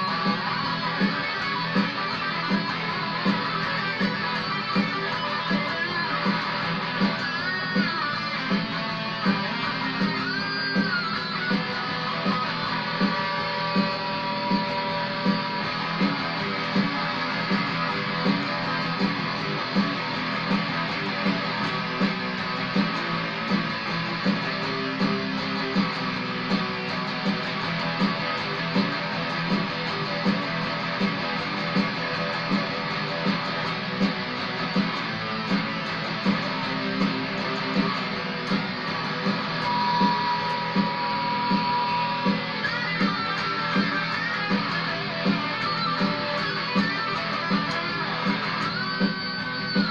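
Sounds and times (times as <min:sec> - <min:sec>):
electric guitar playing: 0:00.0 - 0:49.9
steady beat: 0:00.0 - 0:49.9.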